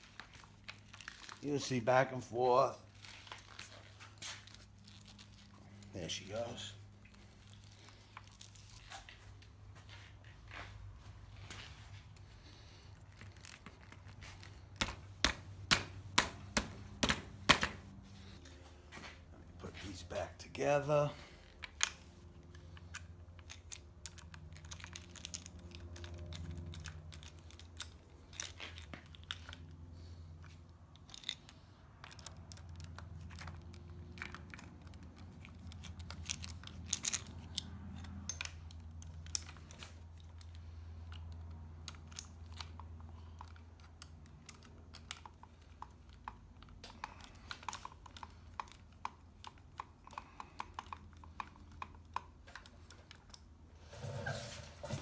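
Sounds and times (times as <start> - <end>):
small plastic parts clicking: 21.4 - 29.7, 30.4 - 53.6.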